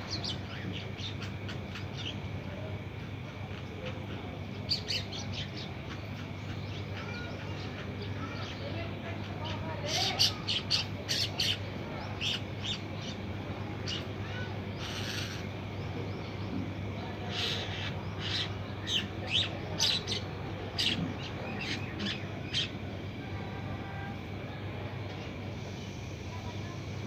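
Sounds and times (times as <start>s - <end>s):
steady low hum: 0.0s - 27.0s
birds chirping: 3.8s - 24.3s.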